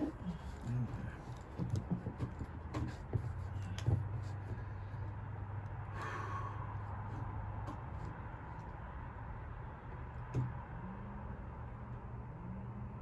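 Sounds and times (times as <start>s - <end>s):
handling clicks and knocks: 0.0s - 4.7s.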